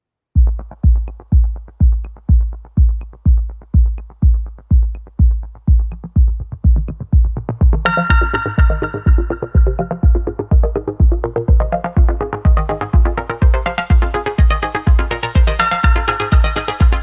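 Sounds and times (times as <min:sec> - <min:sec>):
electronic dance music: 0:00.4 - 0:17.0
hi-hat ticks: 0:00.4 - 0:17.0
kick drum: 0:00.4 - 0:17.0
bright synthesizer chord: 0:07.8 - 0:17.0.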